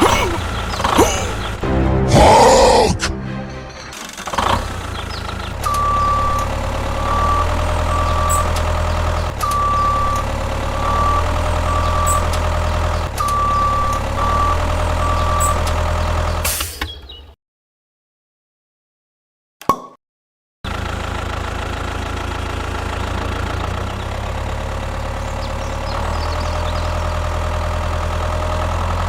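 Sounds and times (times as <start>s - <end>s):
low engine hum: 0.0s - 2.1s, 3.1s - 16.4s, 20.7s - 29.0s
vehicle reversing alarm beeping: 5.5s - 16.2s.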